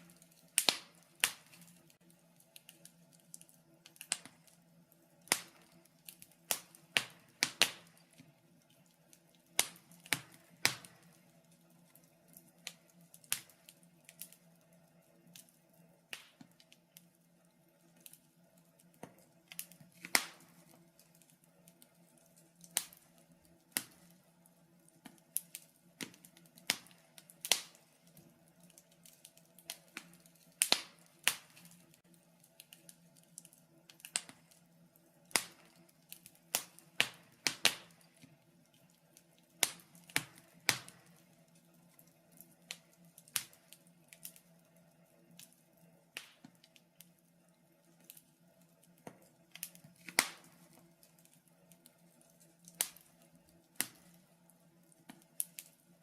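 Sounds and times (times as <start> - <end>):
faint steady hum: 0.0 - 56.0
wood fire crackling: 0.0 - 56.0.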